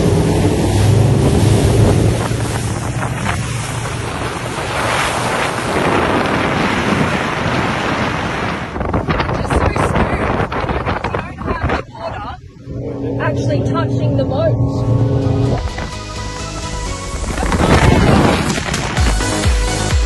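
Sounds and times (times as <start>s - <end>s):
wind buffeting microphone: 0.0s - 19.4s
water rushing past boat: 0.0s - 20.0s
low steady hum: 11.4s - 15.9s.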